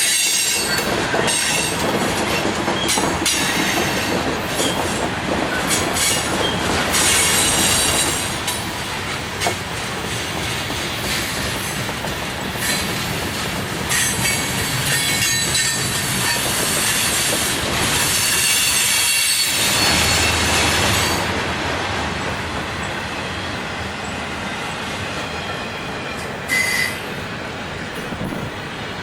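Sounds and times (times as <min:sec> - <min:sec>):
wheel squeal on rails: 0:00.0 - 0:01.8, 0:02.4 - 0:08.5, 0:12.5 - 0:13.2, 0:13.9 - 0:21.3, 0:26.2 - 0:27.1
freight train rumbling past: 0:00.0 - 0:29.0
sharp squeak: 0:26.5 - 0:27.1.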